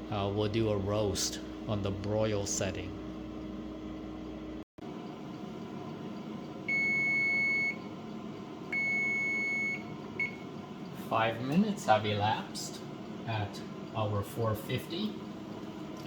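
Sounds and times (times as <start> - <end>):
toaster oven timer beeping: 5.9 - 8.0, 8.6 - 10.5.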